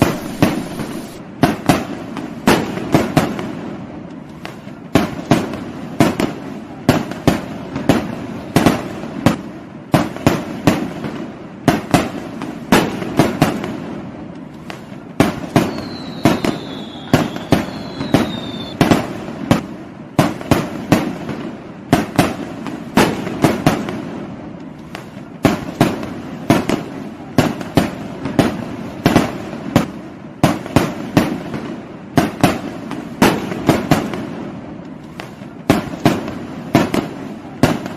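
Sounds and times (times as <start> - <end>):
falling firework whistles: 0.0 - 1.2, 14.8 - 19.0
fireworks and firecrackers banging: 0.0 - 37.9.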